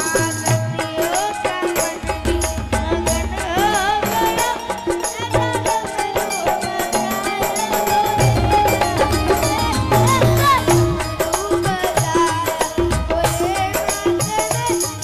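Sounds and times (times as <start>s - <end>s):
fast steady percussion: 0.0s - 15.0s
wavering melodic line: 2.1s - 12.1s.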